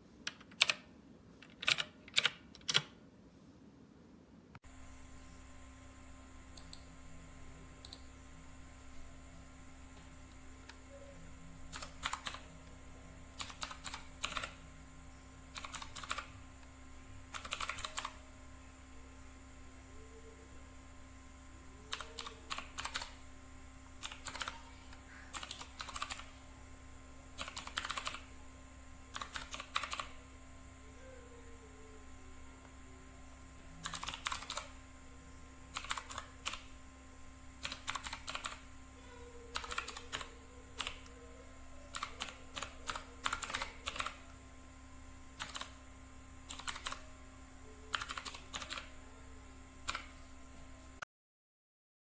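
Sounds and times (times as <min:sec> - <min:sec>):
mechanical keyboard typing: 0:00.2 - 0:03.0, 0:11.7 - 0:12.5, 0:13.4 - 0:14.6, 0:15.5 - 0:16.3, 0:17.3 - 0:18.2, 0:21.9 - 0:23.2, 0:24.0 - 0:24.6, 0:25.3 - 0:26.3, 0:27.4 - 0:28.3, 0:29.1 - 0:30.2, 0:33.8 - 0:34.8, 0:35.7 - 0:36.7, 0:37.6 - 0:38.7, 0:39.5 - 0:41.2, 0:41.9 - 0:44.3, 0:45.4 - 0:45.8, 0:46.4 - 0:47.1, 0:47.9 - 0:48.9, 0:49.8 - 0:50.2.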